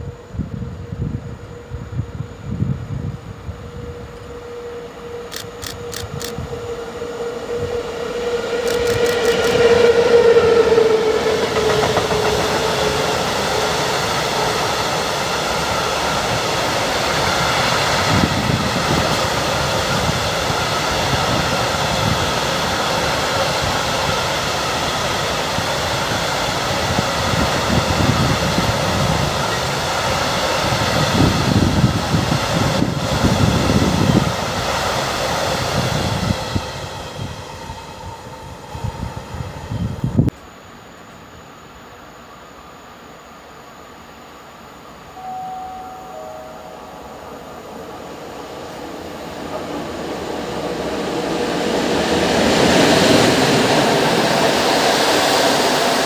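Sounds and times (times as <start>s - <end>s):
train wheel rumble: 0.0s - 40.4s, 45.2s - 56.0s
electric locomotive whine: 0.0s - 56.0s
rail clatter: 8.5s - 28.2s.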